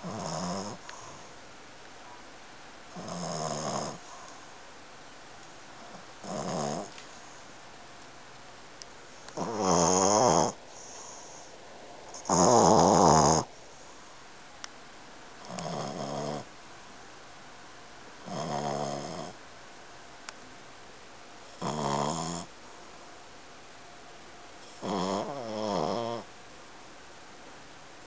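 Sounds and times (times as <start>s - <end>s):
puppy snoring: 0.0s - 1.3s, 2.9s - 4.4s, 5.8s - 7.4s, 9.3s - 11.5s, 12.1s - 13.6s, 15.4s - 16.5s, 18.2s - 19.4s, 21.5s - 22.6s, 24.6s - 26.3s.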